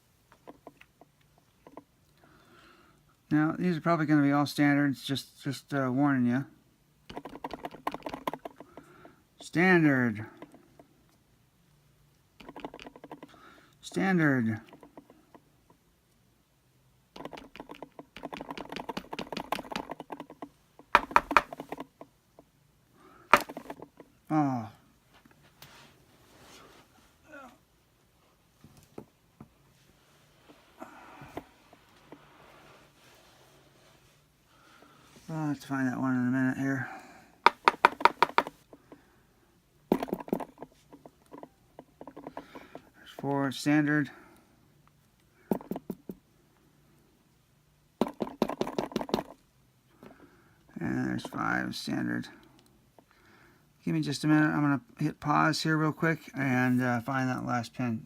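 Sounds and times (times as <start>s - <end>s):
lock parts clicking on hard surface: 7.1s - 8.7s, 12.4s - 13.4s, 17.2s - 22.1s, 37.5s - 38.8s.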